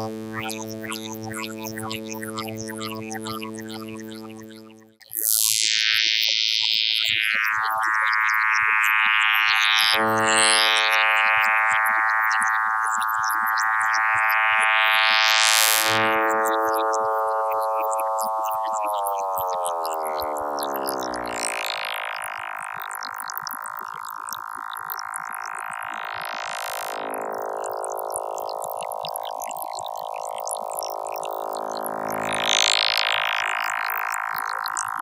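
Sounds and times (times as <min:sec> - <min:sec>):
synth tone sweeping brightness: 0:00.0 - 0:05.0, 0:07.4 - 0:23.2.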